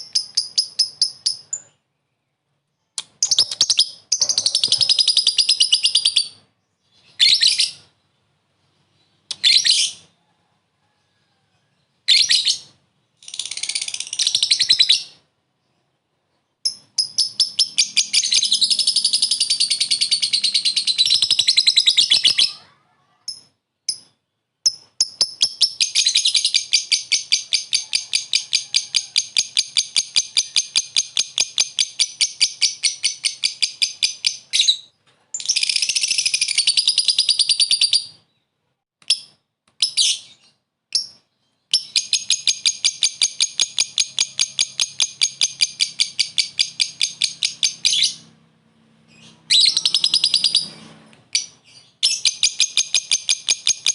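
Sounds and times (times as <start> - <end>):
bird rapid chattering trills: 41.8 - 48.3, 49.3 - 50.7
bird shrill calls: 49.3 - 50.8.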